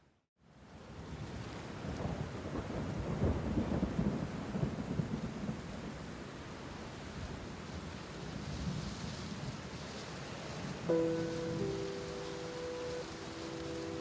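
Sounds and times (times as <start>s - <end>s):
steady rain: 0.4s - 14.0s
low rumble of thunder: 1.1s - 9.8s.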